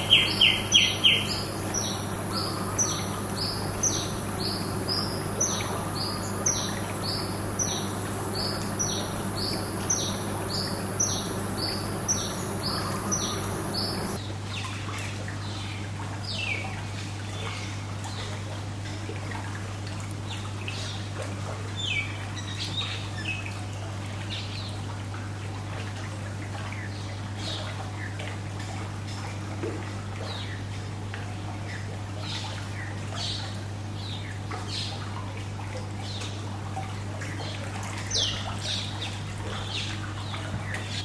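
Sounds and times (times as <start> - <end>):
birds chirping: 0.0 - 14.2
high-pitched whine: 0.0 - 14.2
low hum: 0.0 - 14.2
trickling pool water: 0.0 - 41.0.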